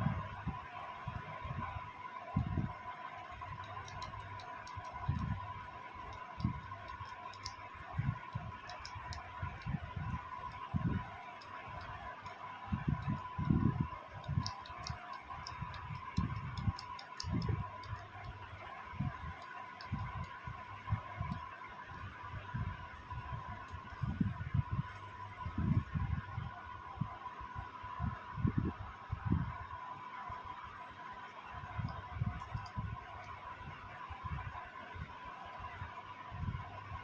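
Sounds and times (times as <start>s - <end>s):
faint high hum: 0.0s - 37.0s
light clicks and ticks: 2.3s - 25.3s, 31.2s - 33.5s.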